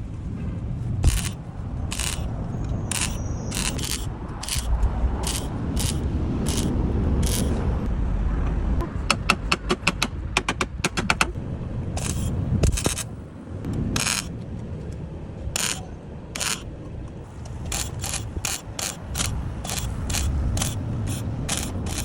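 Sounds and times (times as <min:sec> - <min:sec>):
ratchet wrench clicking: 0:01.0 - 0:07.5, 0:12.0 - 0:13.1, 0:14.0 - 0:14.3, 0:15.6 - 0:15.8, 0:16.4 - 0:16.6, 0:17.4 - 0:22.0.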